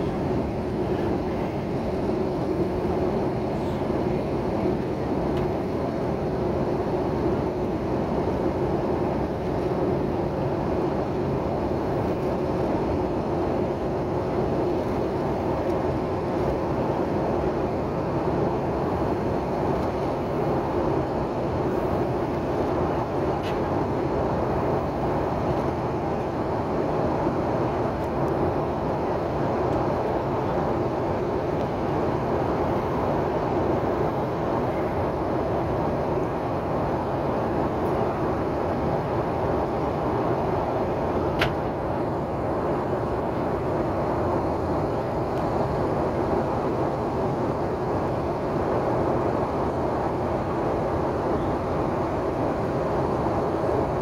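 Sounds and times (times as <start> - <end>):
airliner cabin noise: 0.0 - 54.0.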